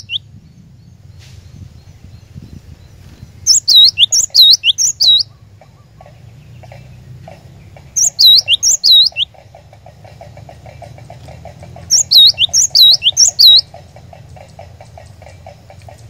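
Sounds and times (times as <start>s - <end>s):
bird whistling song: 0.0s - 5.8s, 7.9s - 9.3s, 11.9s - 13.7s.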